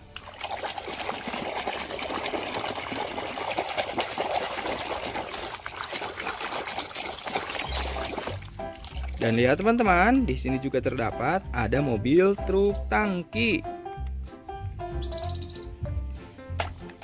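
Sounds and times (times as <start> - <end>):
water dripping: 0.0 - 10.0
water trickling and splashing: 0.0 - 10.1.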